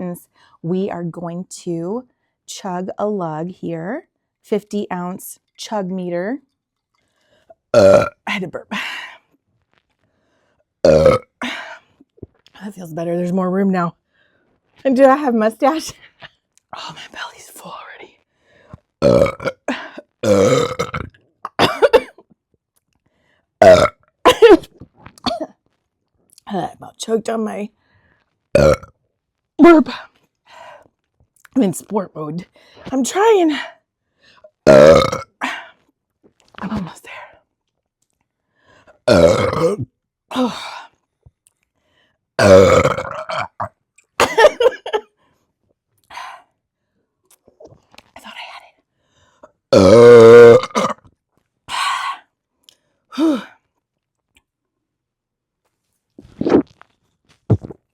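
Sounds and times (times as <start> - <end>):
woman belching: 7.8 - 8.2, 10.9 - 11.3, 19.0 - 22.2, 23.6 - 25.5, 28.6 - 28.9, 34.7 - 35.3, 39.1 - 40.5, 42.4 - 44.7, 49.8 - 51.0
woman burping: 7.8 - 8.2, 10.9 - 11.8, 19.0 - 22.2, 23.6 - 25.5, 34.7 - 35.3, 39.1 - 40.6, 42.4 - 45.0, 49.7 - 51.0.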